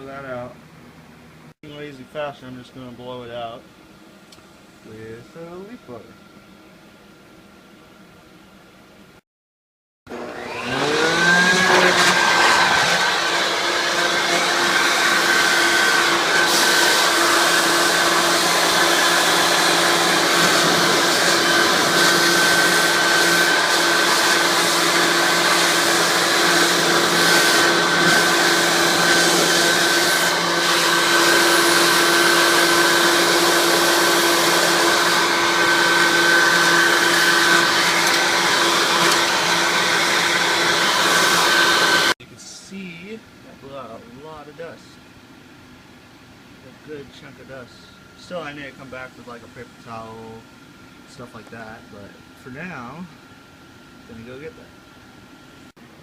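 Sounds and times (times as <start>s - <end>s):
leaf blower running: 10.1s - 42.2s.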